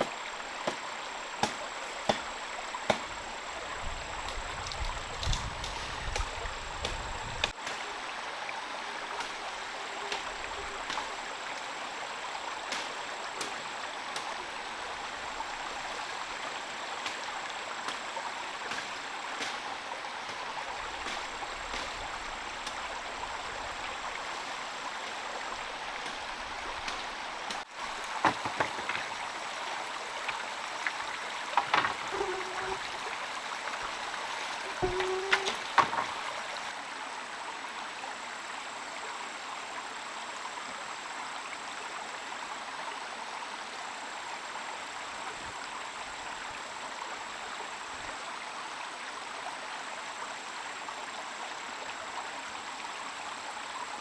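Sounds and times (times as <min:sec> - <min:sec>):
steady rain hiss: 0:00.0 - 0:54.0
brief squeaks: 0:34.6 - 0:35.8.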